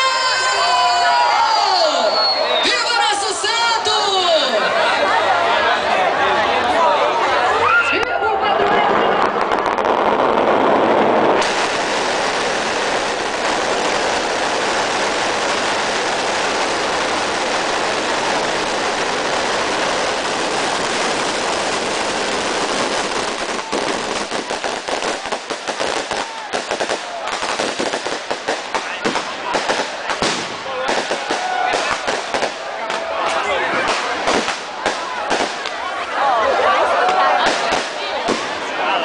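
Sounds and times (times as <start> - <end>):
rapid crackling bangs: 8.6 - 36.0, 37.1 - 38.8.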